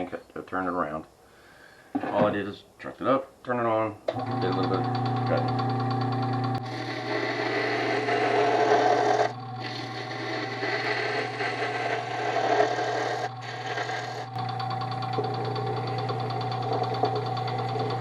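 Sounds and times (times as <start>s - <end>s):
lathe motor hum: 4.1s - 18.0s
tool scraping spinning wood: 4.1s - 18.0s.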